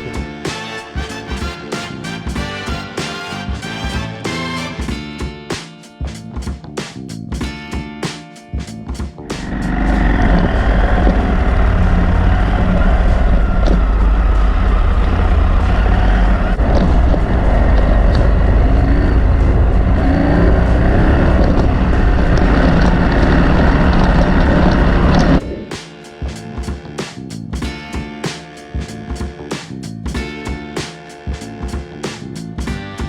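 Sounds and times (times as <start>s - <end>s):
motorcycle engine: 9.2s - 32.8s
wind and road noise: 9.3s - 25.7s.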